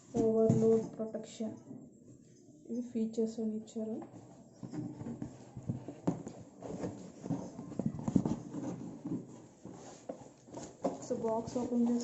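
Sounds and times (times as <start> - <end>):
hands handling cardboard box: 4.1 - 12.0.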